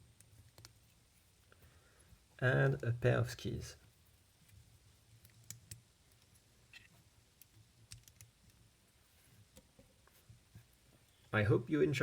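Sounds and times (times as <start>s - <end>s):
faint small clicks: 0.1s - 0.9s, 5.2s - 8.6s.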